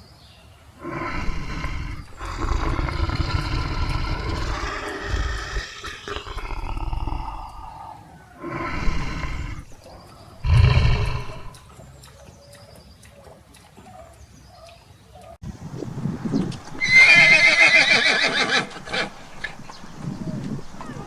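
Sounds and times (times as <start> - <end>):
tiger roaring: 0.8 - 11.6, 15.9 - 21.0.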